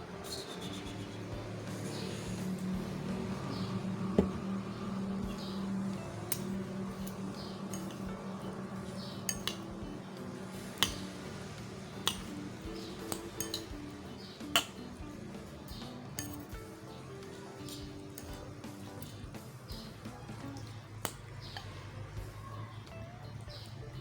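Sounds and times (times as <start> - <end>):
utensils clinking on dishware: 3.5 - 22.1.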